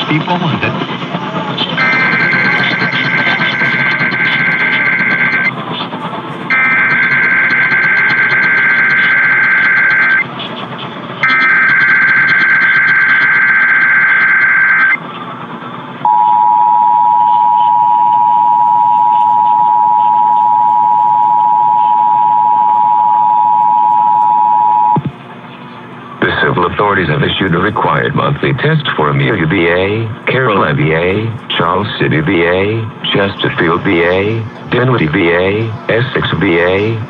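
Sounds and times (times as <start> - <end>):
radio static: 0.0 - 37.0
screeching data bursts: 1.7 - 5.6, 6.5 - 10.3, 11.2 - 15.0
two-tone attention signal: 1.8 - 5.5, 6.5 - 10.3, 11.2 - 15.0, 16.0 - 25.1.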